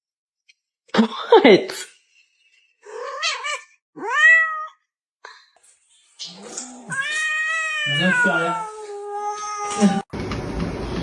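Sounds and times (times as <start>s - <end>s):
cat meowing: 2.9s - 4.8s, 6.6s - 10.1s.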